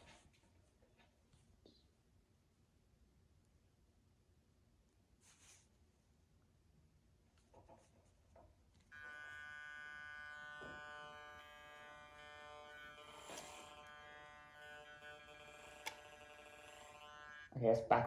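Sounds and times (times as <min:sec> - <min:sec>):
model train motor whining: 0:08.9 - 0:17.6.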